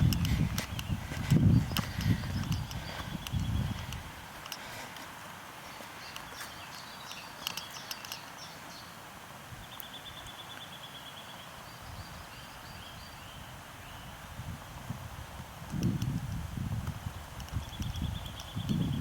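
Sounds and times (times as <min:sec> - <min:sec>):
small birds chirping and singing: 0:00.0 - 0:04.9, 0:05.6 - 0:09.0, 0:09.6 - 0:14.2, 0:17.5 - 0:19.0
soft footsteps: 0:00.0 - 0:06.9
steady outdoor hiss: 0:00.0 - 0:19.0.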